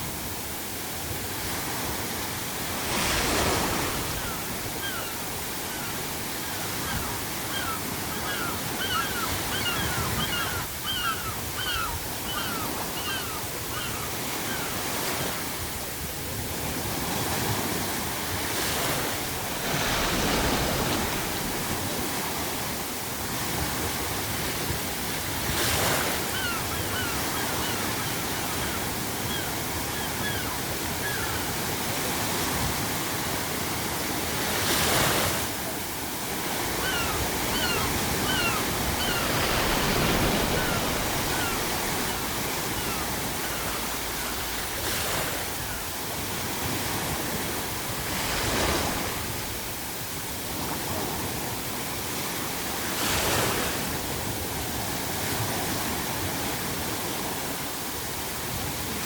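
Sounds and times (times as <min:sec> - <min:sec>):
ocean surf breaking: 0:00.9 - 0:57.6
seagulls calling: 0:03.0 - 0:15.3, 0:25.6 - 0:31.8, 0:36.3 - 0:47.0.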